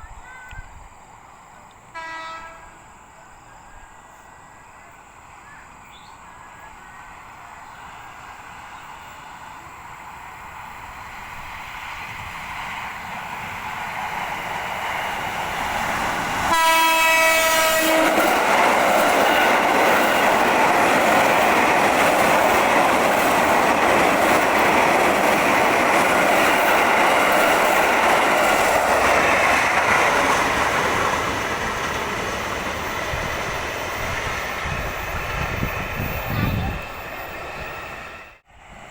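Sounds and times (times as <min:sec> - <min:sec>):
electric train rumble: 0:00.0 - 0:38.9
wheels rushing on rail: 0:00.0 - 0:38.9
train horn blast: 0:01.9 - 0:02.8, 0:16.4 - 0:18.4.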